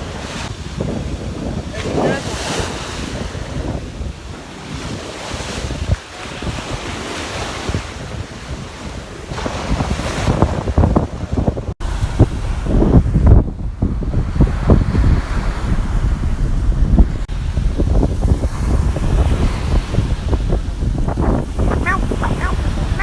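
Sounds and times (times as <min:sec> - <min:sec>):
ocean surf washing in: 0:00.0 - 0:23.0
wind gusting on microphone: 0:00.0 - 0:23.0.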